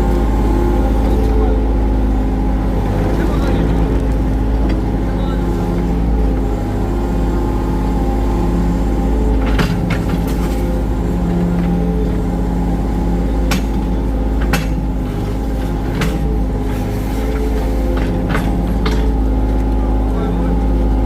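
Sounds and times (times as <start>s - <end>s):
excavator diesel engine running: 0.0s - 21.0s
sharp metallic clanks: 13.4s - 15.2s.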